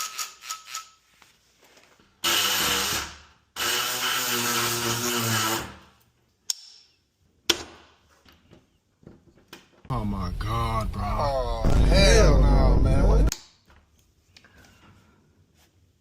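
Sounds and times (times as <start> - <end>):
sharp knock: 11.6 - 13.2.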